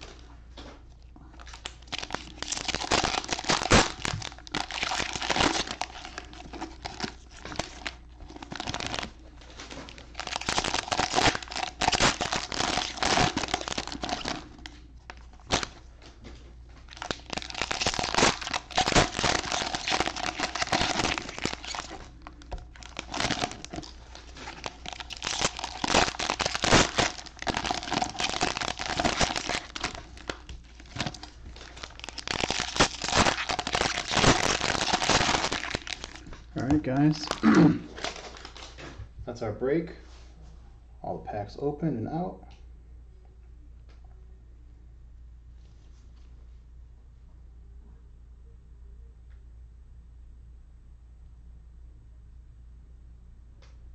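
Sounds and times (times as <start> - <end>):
wrappers being torn and crumpled: 1.3 - 16.2, 16.8 - 38.9.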